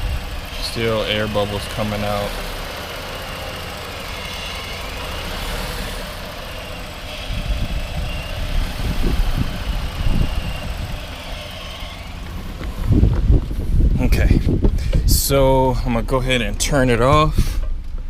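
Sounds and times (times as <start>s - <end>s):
car engine idling: 0.0s - 18.0s
irregular low thumps: 12.2s - 18.0s.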